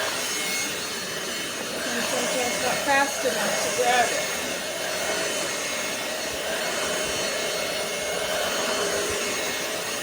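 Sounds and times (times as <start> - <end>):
stick vacuum running: 0.0 - 10.0.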